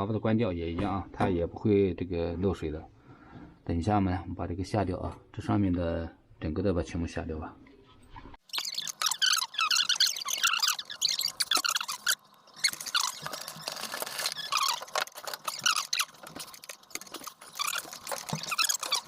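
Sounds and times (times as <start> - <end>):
valve threads squeaking: 8.4 - 19.0.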